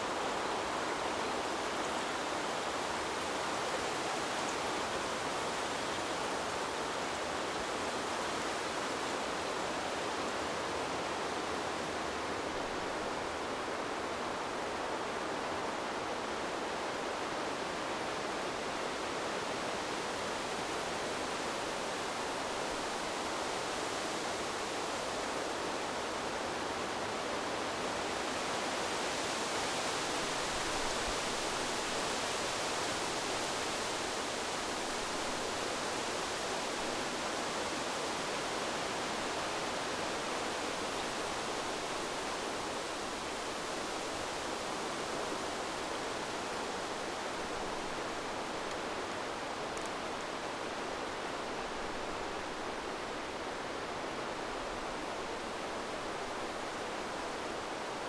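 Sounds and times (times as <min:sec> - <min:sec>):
river water flowing: 0:00.0 - 0:58.0.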